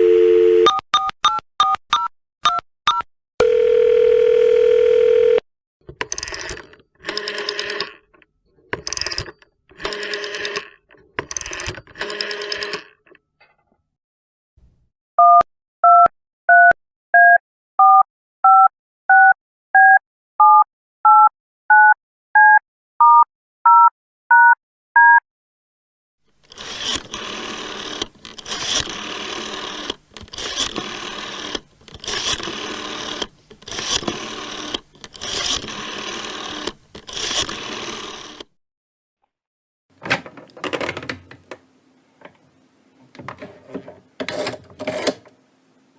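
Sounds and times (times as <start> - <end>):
keypad dialing beeps: 0.6 - 3.1, 15.2 - 25.2.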